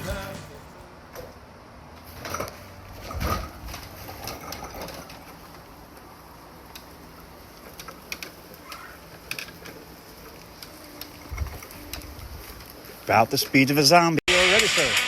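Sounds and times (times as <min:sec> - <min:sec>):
wheelchair motor hum: 0:02.2 - 0:13.2.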